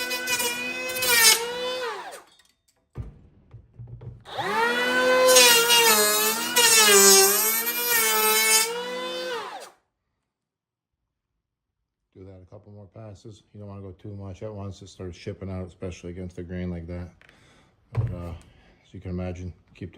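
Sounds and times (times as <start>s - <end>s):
electric planer motor whining: 0.0s - 2.2s, 4.3s - 9.7s
short knock: 2.9s - 4.3s.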